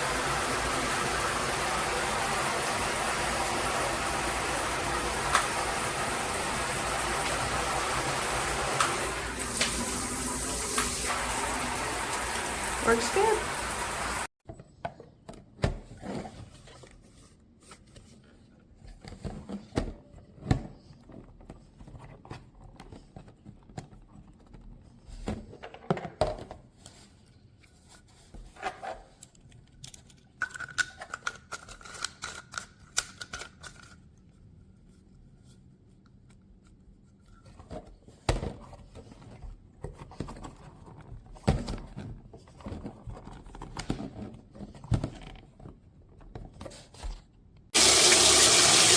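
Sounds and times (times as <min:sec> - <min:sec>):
objects clicking and rustling: 0:28.6 - 0:34.1.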